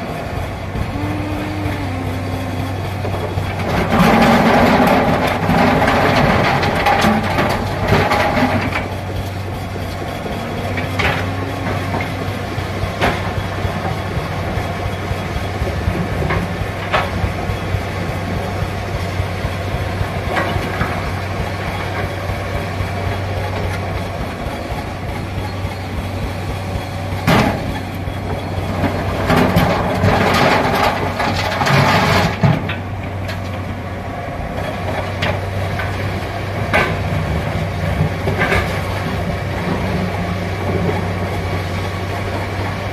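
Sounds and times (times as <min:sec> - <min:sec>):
excavator diesel engine humming: 0:00.0 - 0:42.9
knocks and clatters: 0:03.5 - 0:33.5.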